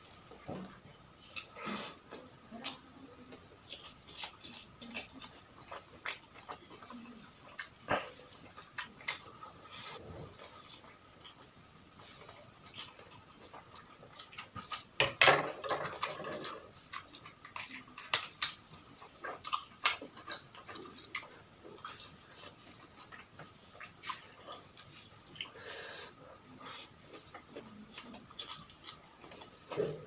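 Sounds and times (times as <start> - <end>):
person chewing and crunching food: 0.0 - 30.0.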